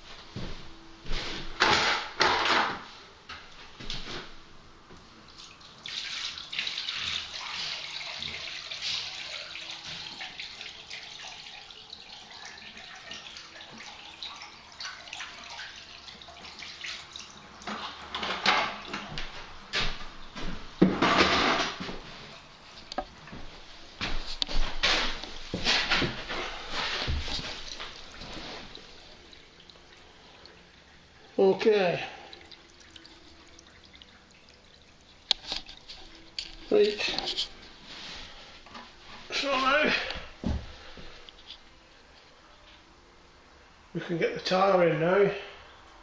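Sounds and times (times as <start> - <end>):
water draining down waste: 5.1 - 42.5
water pouring into shower tray: 5.3 - 20.4, 24.6 - 38.6.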